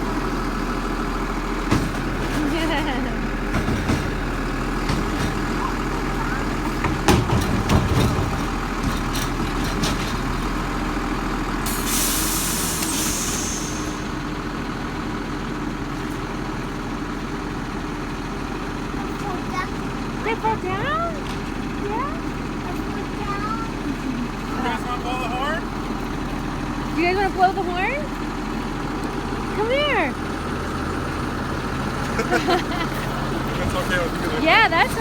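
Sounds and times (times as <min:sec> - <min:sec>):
diesel engine idling: 0:00.0 - 0:35.0
air brake hiss: 0:11.6 - 0:14.2.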